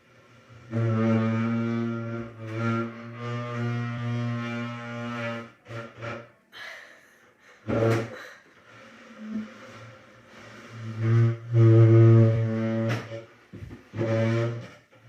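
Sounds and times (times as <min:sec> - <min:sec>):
chair creaking: 0:07.7 - 0:15.0.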